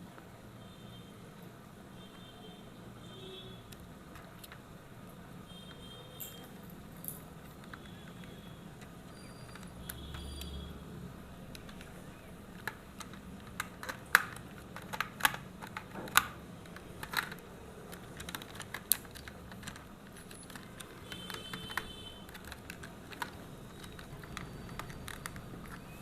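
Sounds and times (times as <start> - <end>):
plastic toy parts clicking: 3.7 - 4.6, 11.5 - 26.0.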